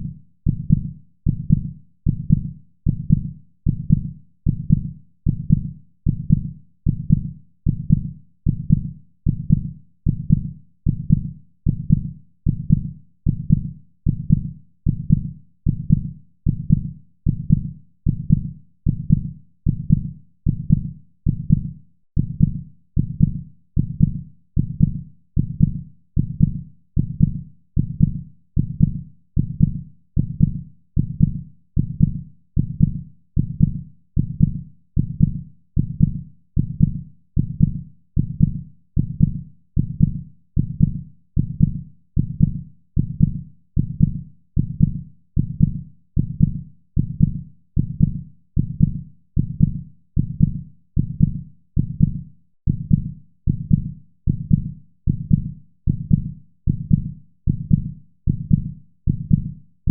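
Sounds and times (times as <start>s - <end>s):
heartbeat thumps: 0.0s - 59.9s.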